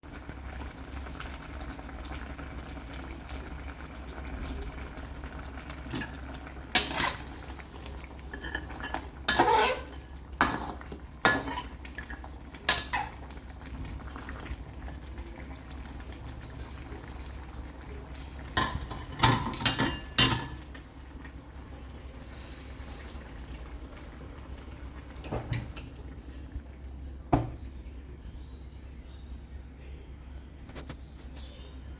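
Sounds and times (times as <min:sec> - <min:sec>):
metal utensils clattering on pot: 0:05.9 - 0:13.4, 0:18.6 - 0:20.8.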